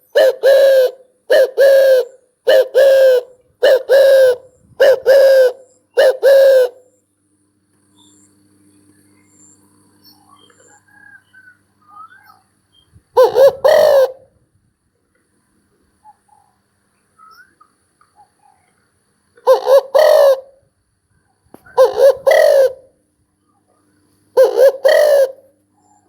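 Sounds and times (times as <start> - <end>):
dove cooing: 0.0 - 6.9, 13.2 - 14.4, 19.4 - 20.6, 21.6 - 23.0, 24.4 - 26.0
small birds chirping: 7.9 - 13.0.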